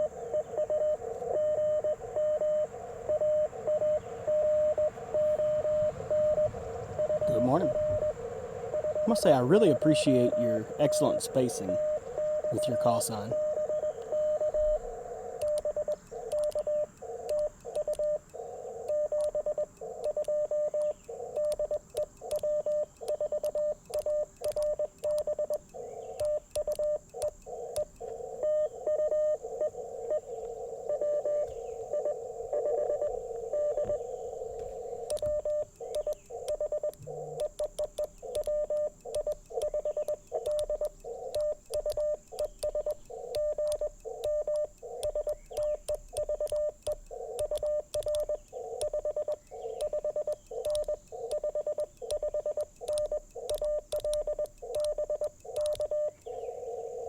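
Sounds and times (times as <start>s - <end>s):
morse code tone: 0.0s - 25.6s, 26.2s - 30.3s, 30.9s - 57.0s
radio hiss: 0.0s - 57.0s
faint sharp clicks: 15.3s - 28.2s, 33.7s - 56.4s.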